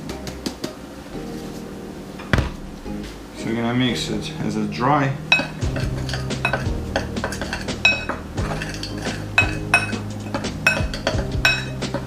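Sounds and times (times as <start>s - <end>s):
light background music: 0.0s - 12.0s
utensil scraping mixing bowl: 5.3s - 12.0s.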